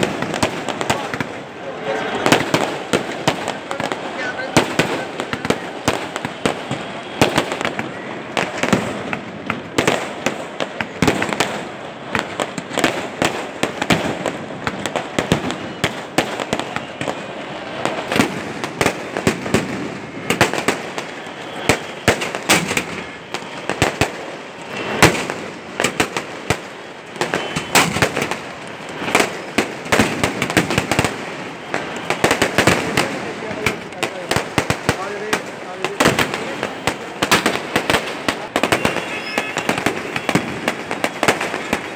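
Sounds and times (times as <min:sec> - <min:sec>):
fireworks bangs and crackles: 0:00.0 - 0:41.9
hiss of rockets: 0:00.0 - 0:41.9.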